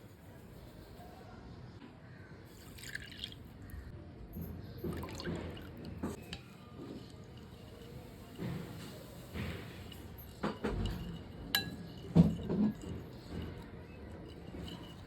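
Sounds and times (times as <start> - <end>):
liquid pouring and dripping into bowl: 2.6 - 3.9, 4.8 - 6.4
soft splashes and knocks: 4.8 - 6.2.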